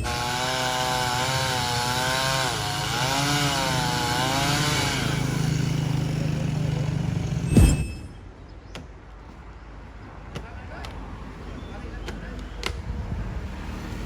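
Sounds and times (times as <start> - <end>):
chainsaw cutting tree: 0.0 - 7.5.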